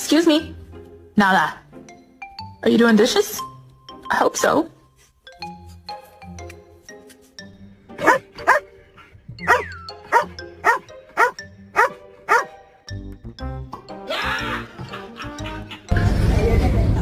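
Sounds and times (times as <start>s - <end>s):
background music: 0.0s - 17.0s
dog barking: 8.0s - 8.7s, 9.4s - 12.6s.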